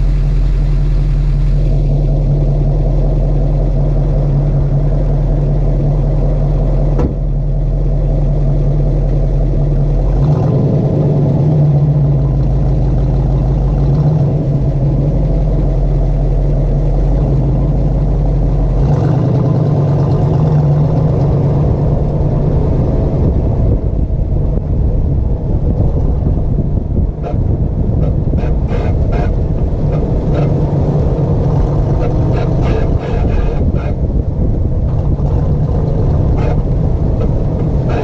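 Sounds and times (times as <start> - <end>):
car engine running: 0.0 - 38.0
wheel grinding noise: 9.2 - 38.0.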